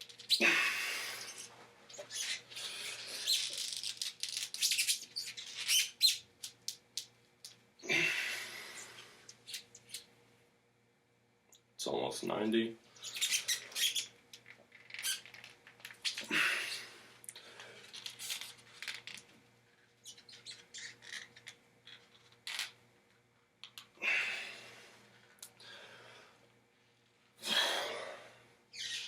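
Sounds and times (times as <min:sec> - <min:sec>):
squeaks and clicks from hands: 0:03.2 - 0:06.3, 0:13.0 - 0:16.3, 0:20.0 - 0:21.6, 0:28.7 - 0:29.0
forceful exhalations: 0:07.8 - 0:09.2, 0:27.4 - 0:28.5.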